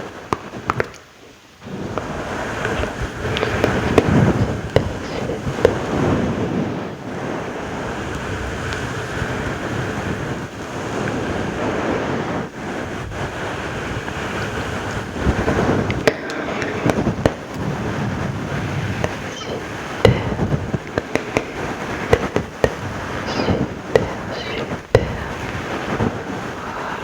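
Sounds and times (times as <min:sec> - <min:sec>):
wet mouth crackling: 0:02.7 - 0:06.0, 0:18.9 - 0:27.0
sharp mouth clicks: 0:04.8 - 0:05.8, 0:19.0 - 0:25.8.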